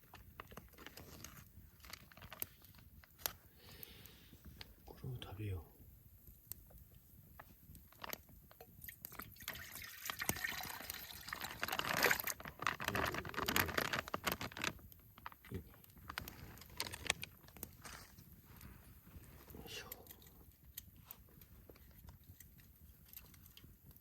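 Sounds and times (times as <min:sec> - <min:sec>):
broth pouring into a pot: 0:06.2 - 0:18.3.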